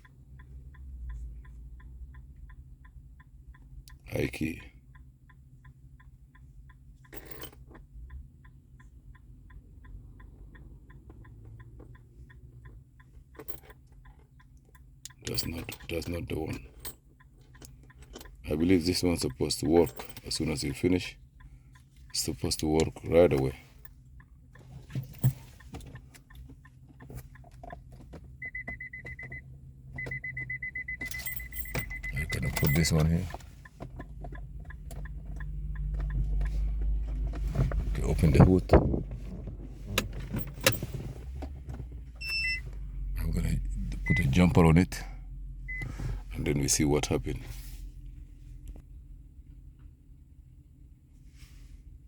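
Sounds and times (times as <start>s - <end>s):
car electronic ticking: 0.0s - 47.4s
keys jangling: 31.0s - 32.9s, 40.2s - 41.0s.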